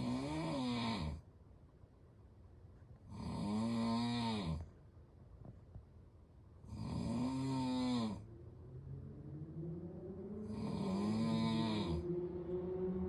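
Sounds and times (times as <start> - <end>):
person snoring: 0.0 - 1.2, 3.1 - 4.6, 6.7 - 8.2, 10.5 - 12.0.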